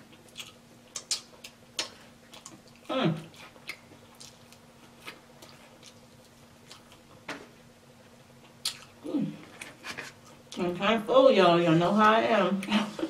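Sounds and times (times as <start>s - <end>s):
faint steady hum: 0.0s - 13.0s
chewing mouth clicks and smacks: 0.2s - 7.0s, 8.6s - 9.0s
person humming mm: 9.0s - 9.5s.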